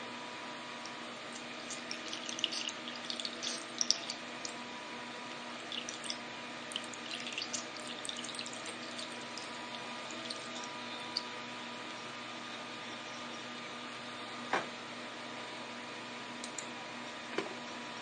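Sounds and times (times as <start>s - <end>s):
faint hum: 0.0s - 18.0s
water dripping and trickling: 1.6s - 4.6s, 5.6s - 11.3s.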